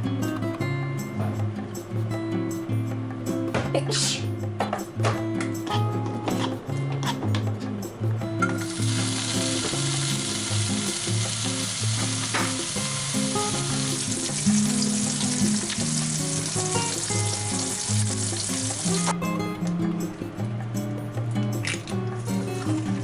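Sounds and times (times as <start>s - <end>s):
background music: 0.0s - 23.0s
food sizzling in frying pan: 8.5s - 19.1s.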